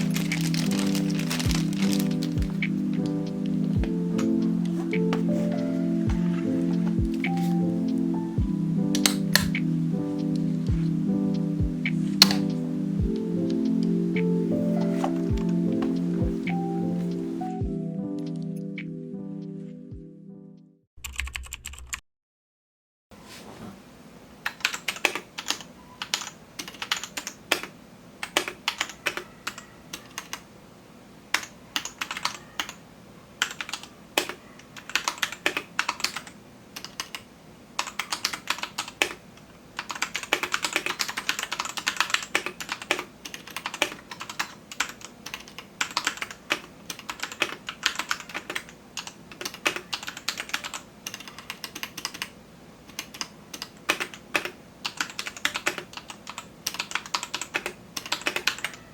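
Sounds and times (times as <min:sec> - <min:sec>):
mechanical keyboard typing: 0:00.0 - 0:07.6, 0:09.0 - 0:09.6, 0:21.0 - 0:22.0, 0:24.4 - 0:30.5, 0:31.3 - 0:32.8, 0:33.4 - 0:39.2, 0:39.8 - 0:58.9.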